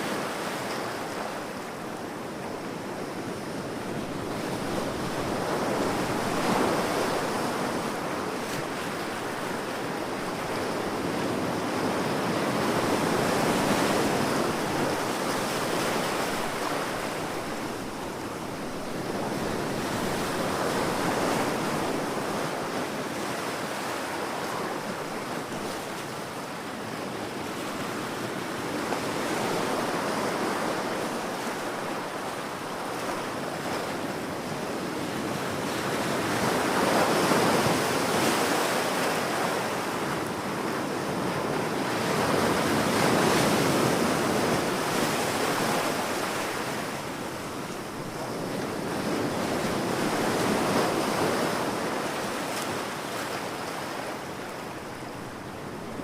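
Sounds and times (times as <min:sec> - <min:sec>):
ocean waves breaking: 0:27.7 - 0:56.0.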